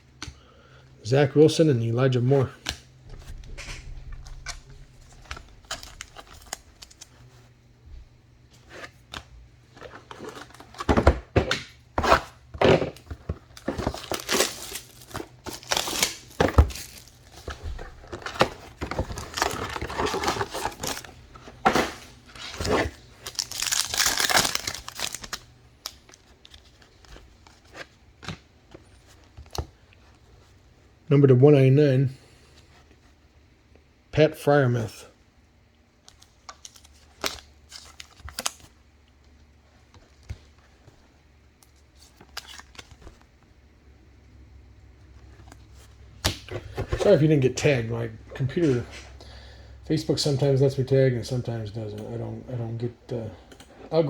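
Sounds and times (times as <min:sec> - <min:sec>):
card pack wrappers tearing: 0:04.3 - 0:07.2, 0:13.4 - 0:27.2.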